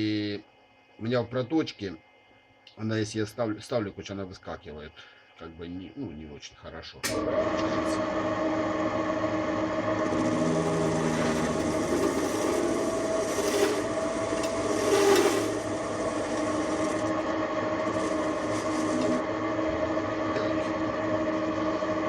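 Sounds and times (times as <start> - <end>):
lathe motor hum: 7.1 - 22.0
cutting tool scraping metal: 10.0 - 17.2, 17.8 - 19.2.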